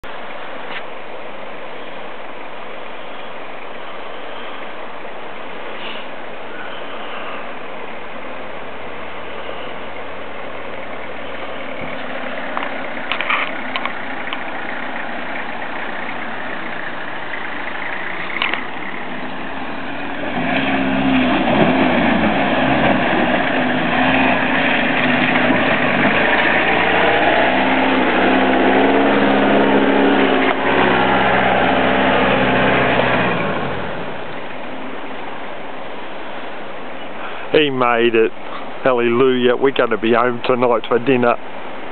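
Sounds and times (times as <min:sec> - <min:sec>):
creek water rushing: 0:00.0 - 0:41.9
vehicle engine revving: 0:10.8 - 0:35.0.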